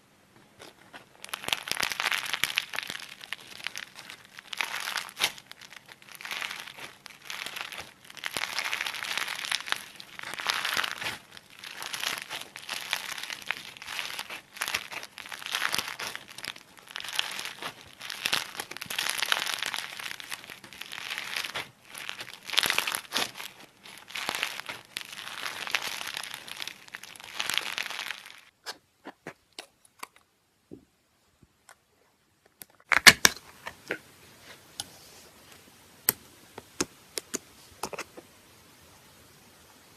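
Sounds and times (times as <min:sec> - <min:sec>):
slime crackling when squeezed: 0:00.6 - 0:28.5.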